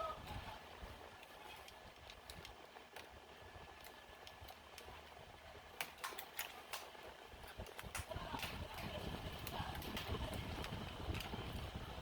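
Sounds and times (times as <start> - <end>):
faint steady hum: 0.0 - 12.0
small tools clicking and tapping: 5.8 - 11.4.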